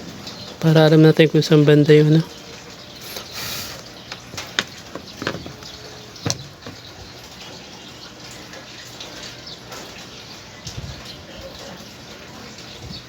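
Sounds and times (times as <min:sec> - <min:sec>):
short hiss: 0:03.0 - 0:03.8.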